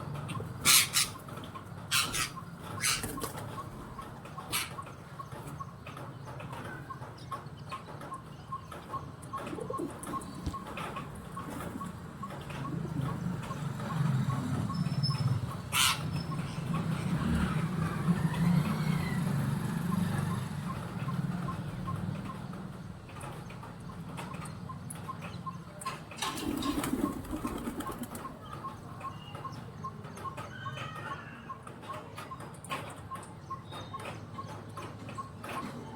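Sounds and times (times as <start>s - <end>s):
soft bird calls: 0.0s - 35.9s
pigeons flapping wings: 26.2s - 28.3s.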